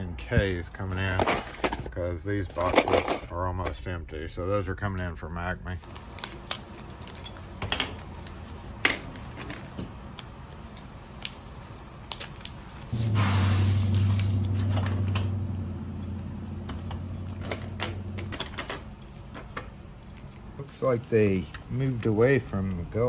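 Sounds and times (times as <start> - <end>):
low steady hum: 0.0 - 23.0
keys and padlocks clinking: 1.0 - 1.9, 2.5 - 3.8, 5.9 - 8.3, 15.9 - 20.6
brief hiss: 12.9 - 14.2.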